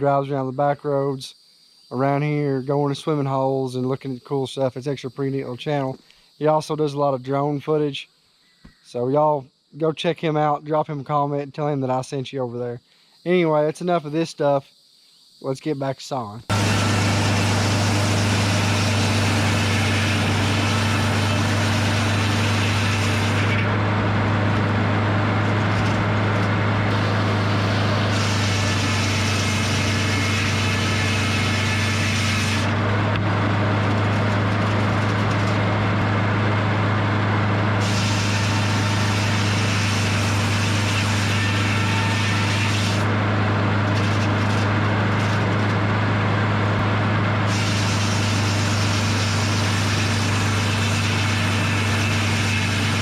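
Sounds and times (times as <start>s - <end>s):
sawmill engine drone: 16.5s - 53.0s.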